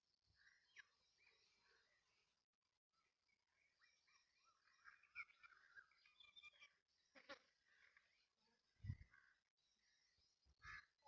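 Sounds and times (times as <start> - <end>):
faint bird chirps: 0.0 - 11.0.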